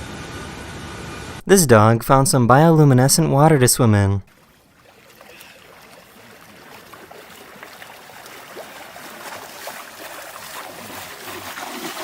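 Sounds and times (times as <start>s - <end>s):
dog paddling in water: 4.3s - 12.0s
water lapping: 4.3s - 12.0s.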